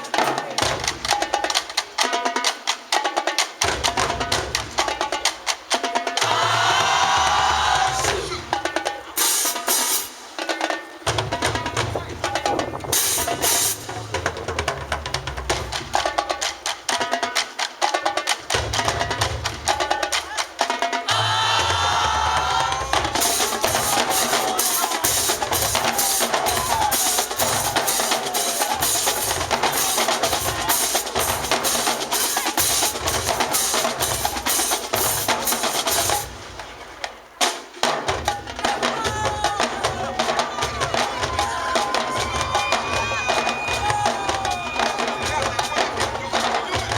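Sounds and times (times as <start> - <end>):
snare drums: 0.0 - 46.9
bass drums: 21.1 - 36.6.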